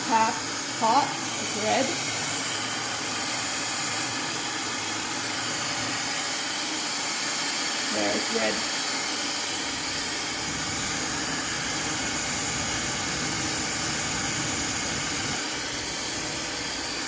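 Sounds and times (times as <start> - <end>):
hair dryer blowing air: 0.0 - 17.0.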